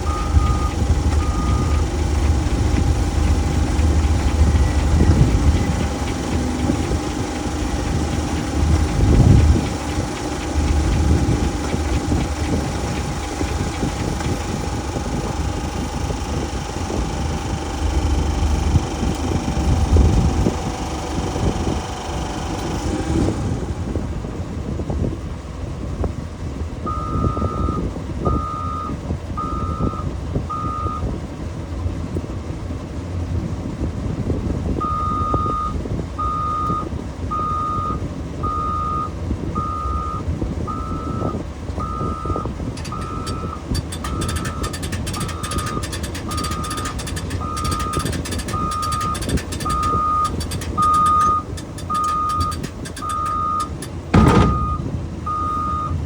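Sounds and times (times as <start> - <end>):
backup alarm beeping: 0.0 - 9.7, 37.4 - 56.0
steady whining hum: 0.0 - 24.3, 41.8 - 56.0
heavy equipment engine rumble: 0.0 - 56.0.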